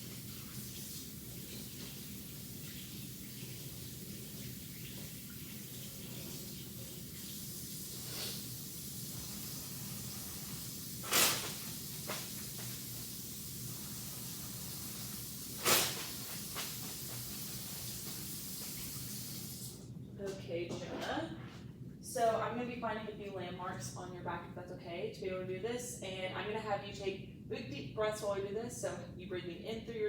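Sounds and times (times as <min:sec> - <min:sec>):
tap water running into sink: 0:08.6 - 0:19.7.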